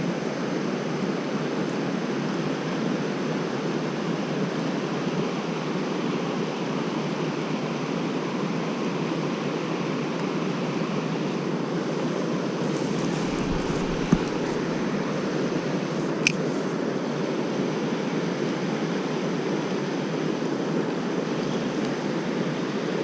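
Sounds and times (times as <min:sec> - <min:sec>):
stream water rushing: 0:11.8 - 0:16.7.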